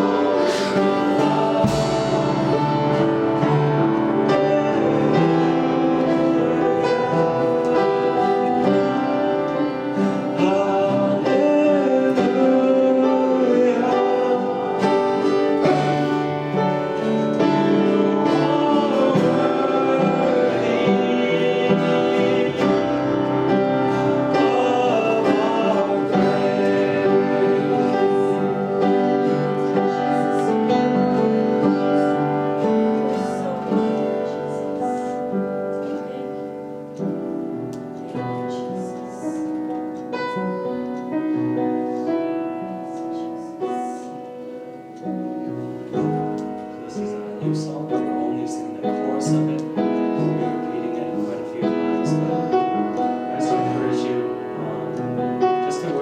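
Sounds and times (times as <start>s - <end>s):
church worship music with singing: 0.0s - 56.0s.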